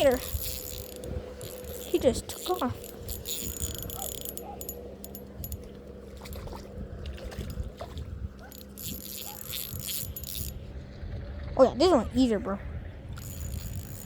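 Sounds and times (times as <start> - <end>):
fishing reel clicking and whirring: 0.0 - 6.6, 7.3 - 7.7, 8.4 - 10.6, 13.2 - 14.0
low rumble of wind or water: 0.0 - 14.0.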